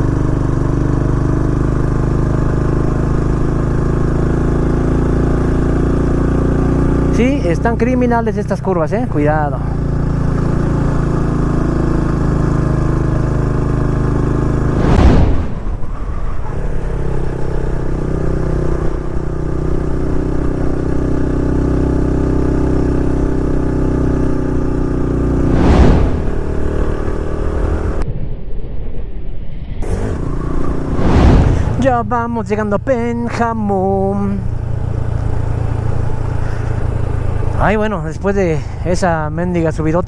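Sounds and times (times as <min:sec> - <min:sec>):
loud whooshes: 0:14.5 - 0:17.7, 0:25.3 - 0:27.4, 0:29.8 - 0:32.2.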